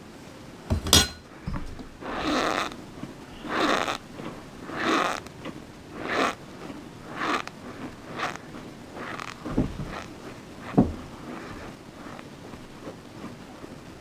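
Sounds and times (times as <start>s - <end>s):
crunchy chewing: 2.0s - 14.0s
dull low thumps: 9.4s - 11.4s.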